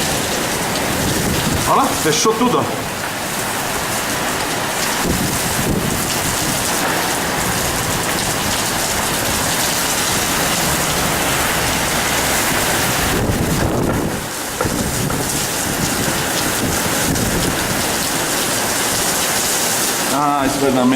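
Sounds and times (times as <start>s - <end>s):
heavy rain pouring: 0.0s - 20.9s
low thunder rumble: 4.9s - 18.3s.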